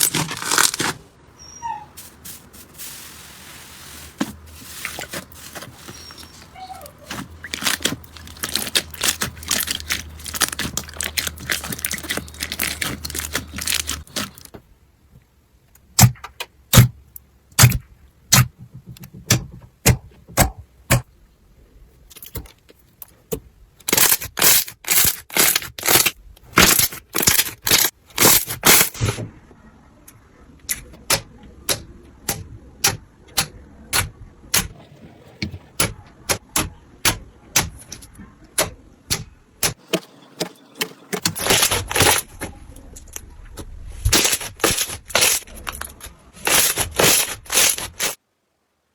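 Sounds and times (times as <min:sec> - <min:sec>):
crunchy slime crackling and popping: 0:00.0 - 0:01.0, 0:07.2 - 0:14.5, 0:23.9 - 0:28.9, 0:44.1 - 0:48.2.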